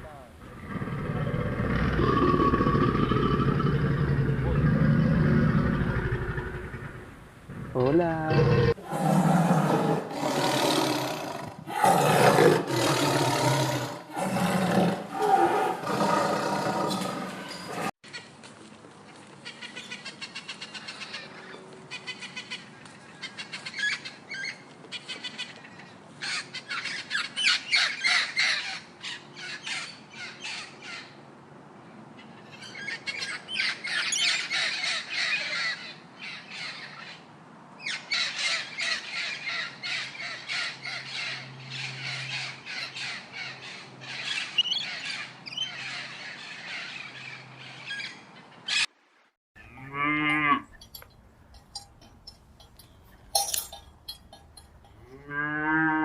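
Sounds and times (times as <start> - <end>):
birds calling rapidly: 19.4 - 31.2, 32.2 - 48.9, 50.4 - 55.2.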